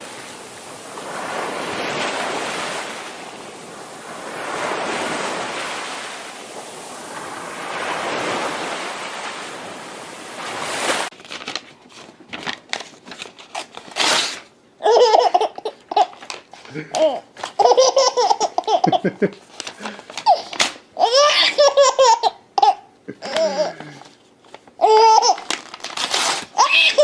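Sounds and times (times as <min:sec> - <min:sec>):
ocean waves breaking: 0:00.0 - 0:11.1.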